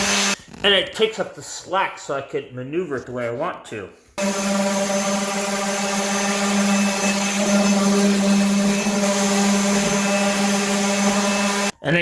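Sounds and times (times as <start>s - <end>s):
electric floor sander running: 0.0s - 0.4s, 4.2s - 11.7s.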